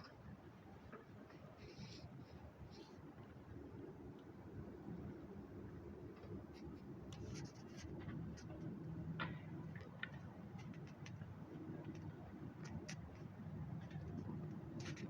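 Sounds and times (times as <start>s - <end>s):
small light clicks and ticks: 6.1s - 15.0s.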